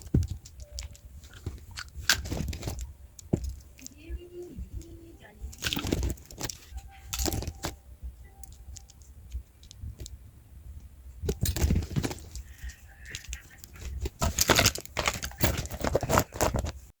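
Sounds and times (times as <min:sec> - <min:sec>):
rustling and clicking: 0:00.0 - 0:16.9.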